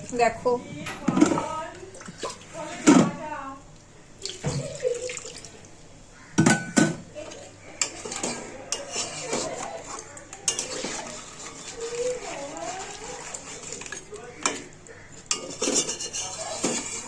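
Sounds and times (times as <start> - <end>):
metal spoon scraping a pot: 7.8 - 17.0.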